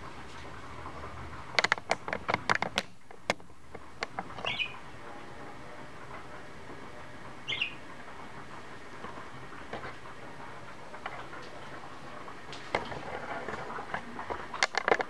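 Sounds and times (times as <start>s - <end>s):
budgerigars chirping: 4.4s - 4.8s, 7.5s - 7.8s.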